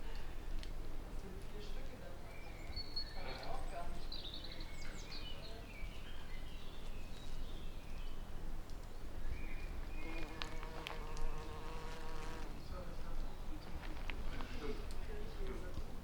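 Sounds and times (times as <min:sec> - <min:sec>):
flying insect buzzing: 0:10.0 - 0:12.6.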